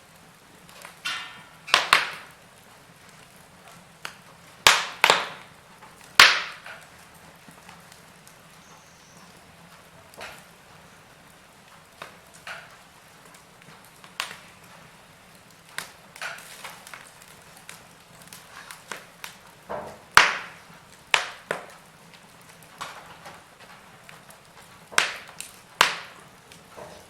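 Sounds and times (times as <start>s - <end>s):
wood fire crackling: 0.0s - 27.0s.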